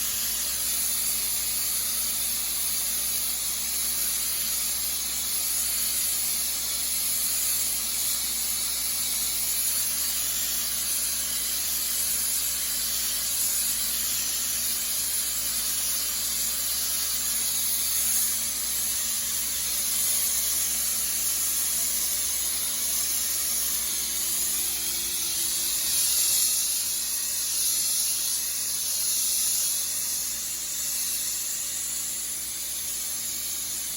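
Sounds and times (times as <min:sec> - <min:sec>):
blaster nozzle hissing: 0:00.0 - 0:33.9.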